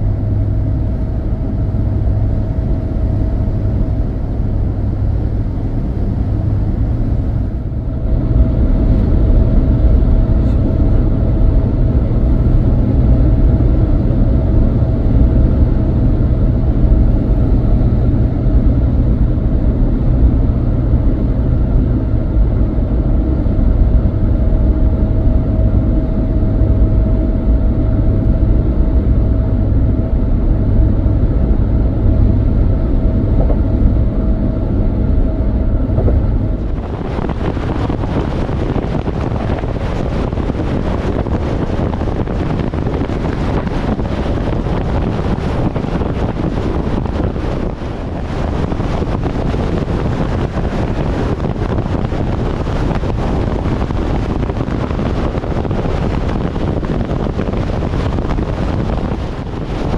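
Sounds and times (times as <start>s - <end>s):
low vehicle-like rumble: 0.0s - 59.9s
loud rushing noise: 35.6s - 59.9s.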